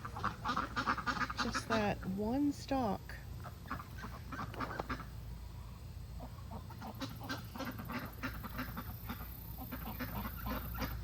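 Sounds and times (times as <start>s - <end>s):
ducks quacking: 0.0s - 2.2s, 3.4s - 5.2s, 6.1s - 11.0s.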